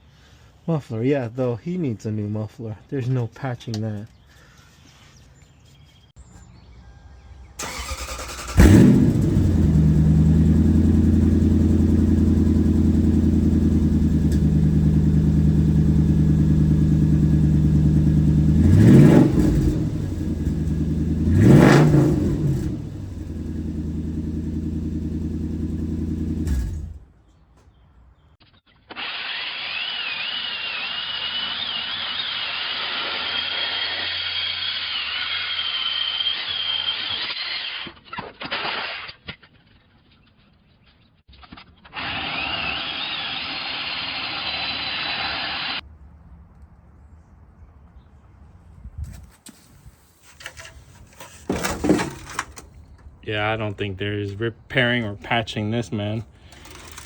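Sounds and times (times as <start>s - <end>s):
engine cranking and revving: 7.6s - 27.1s, 50.3s - 57.0s
power tool whine: 28.9s - 37.4s, 41.9s - 45.8s, 56.5s - 57.0s
leaking exhaust rasp: 49.6s - 57.0s.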